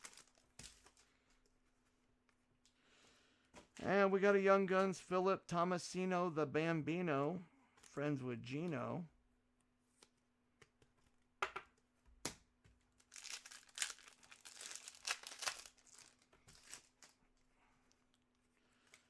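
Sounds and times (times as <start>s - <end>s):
foil wrapper crinkling and tearing: 0.0s - 1.2s, 13.0s - 17.2s.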